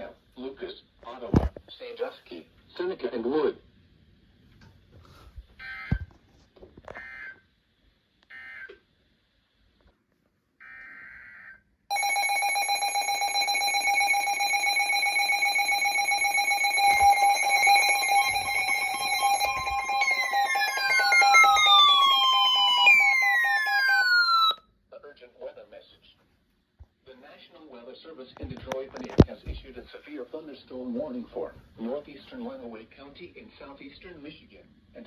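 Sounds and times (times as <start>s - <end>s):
steady alert attention tone: 14.9s - 24.6s.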